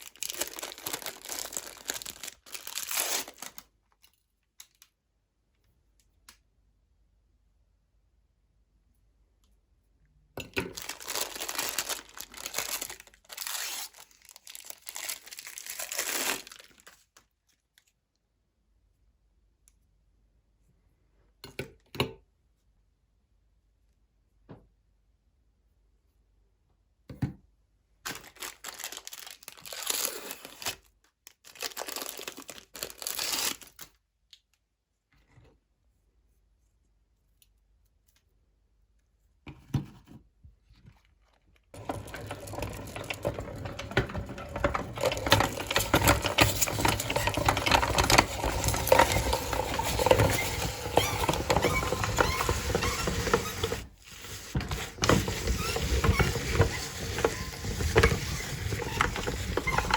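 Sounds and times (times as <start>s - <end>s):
meat grinder crunching ice: 10.7s - 16.7s, 41.8s - 59.9s
handling noise: 41.8s - 59.9s.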